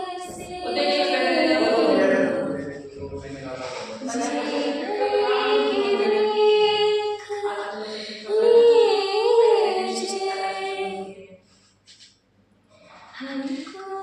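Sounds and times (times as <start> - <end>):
woman singing unaccompanied: 0.0 - 2.9.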